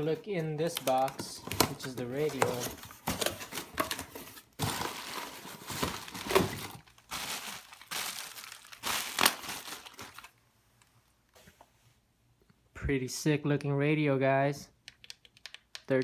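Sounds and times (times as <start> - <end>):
packaging crinkling and rustling: 0.0 - 10.4.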